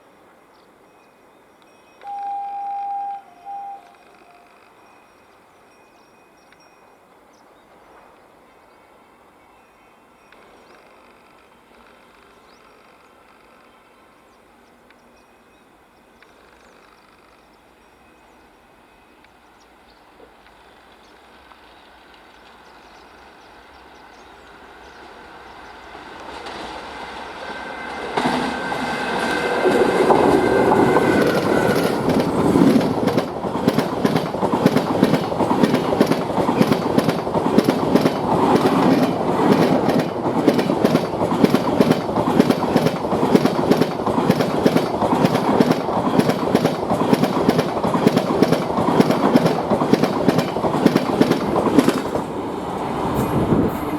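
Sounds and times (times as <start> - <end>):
express train rumbling past: 2.0 - 5.2, 18.1 - 53.9
train wheels clattering over rail joints: 26.2 - 52.4.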